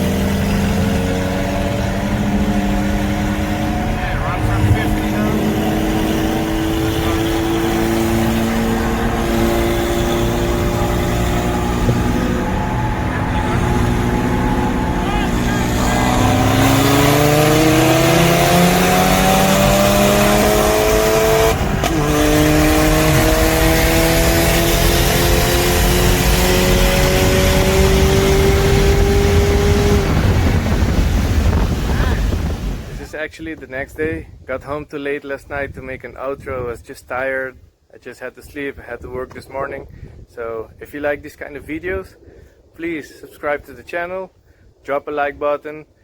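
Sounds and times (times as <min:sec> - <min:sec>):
car engine running steadily: 0:00.0 - 0:33.1
wind and road noise: 0:00.0 - 0:46.0.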